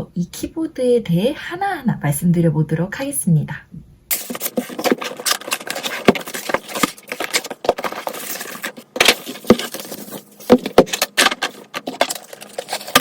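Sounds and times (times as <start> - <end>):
cardboard and plastic rustling: 4.1 - 13.0
packaging being handled: 4.1 - 13.0.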